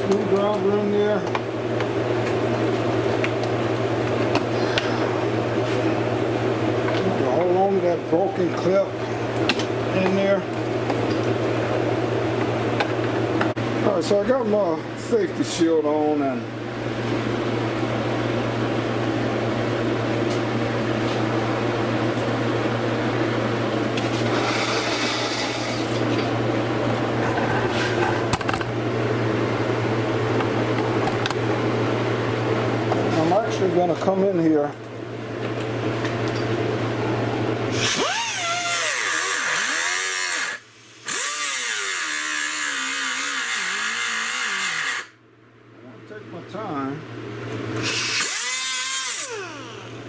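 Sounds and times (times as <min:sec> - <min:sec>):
small electric grinder running: 0:37.7 - 0:45.2, 0:47.8 - 0:50.0.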